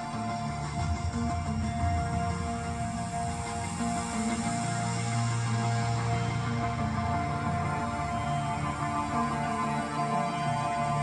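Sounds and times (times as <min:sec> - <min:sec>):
electronic ambient music: 0:00.0 - 0:11.0.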